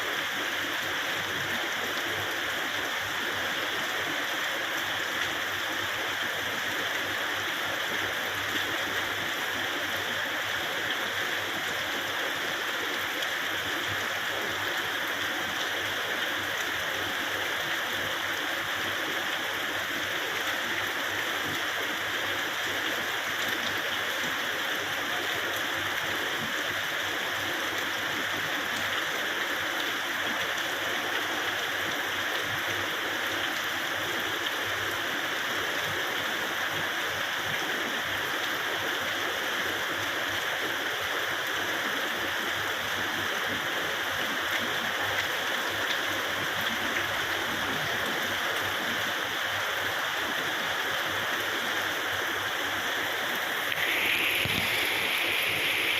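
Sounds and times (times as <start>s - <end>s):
steady rain pouring: 0.0s - 55.9s.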